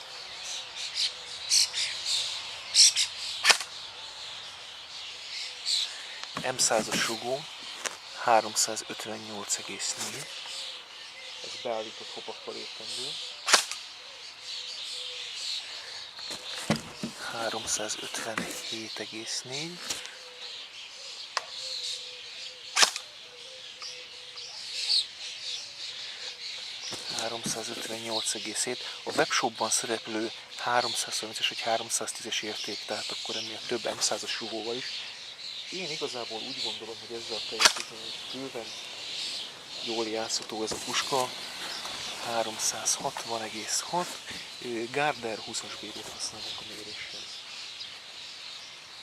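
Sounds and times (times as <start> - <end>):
small birds chirping: 0.0 - 49.0
airsoft gun shot snap: 3.4 - 3.7, 13.5 - 13.8, 22.8 - 23.0
small click: 3.4 - 3.7
airsoft gun shot crack: 13.5 - 13.8.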